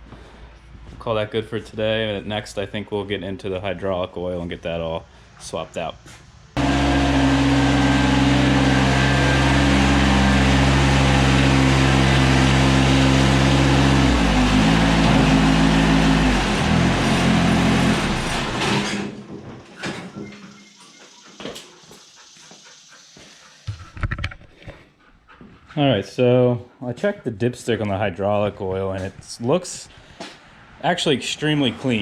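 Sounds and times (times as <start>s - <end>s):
tractor diesel engine running: 6.6s - 19.4s.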